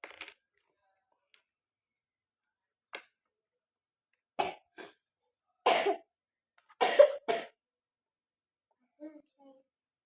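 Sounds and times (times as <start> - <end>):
child coughing: 4.4 - 5.0, 5.7 - 6.1, 6.8 - 7.6.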